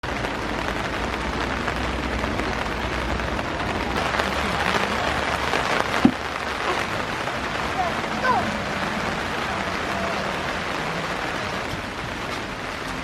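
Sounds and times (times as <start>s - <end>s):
rain on a tarp: 0.0s - 13.0s.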